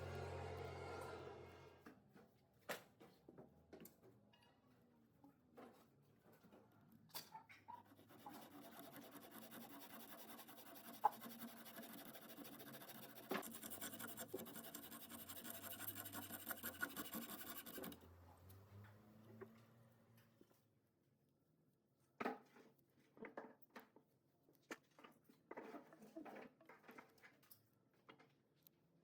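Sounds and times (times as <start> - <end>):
faint scratching: 7.7 - 18.1.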